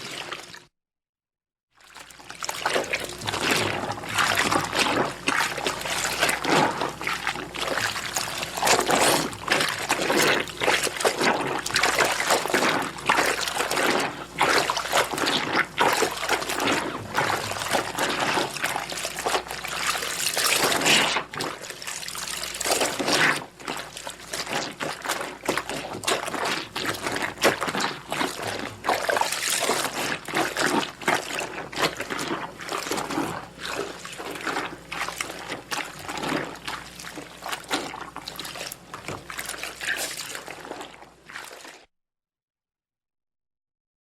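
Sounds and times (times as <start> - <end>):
wet fabric squelching: 0.0 - 0.6, 1.8 - 41.9
water trickling and splashing: 1.8 - 41.9.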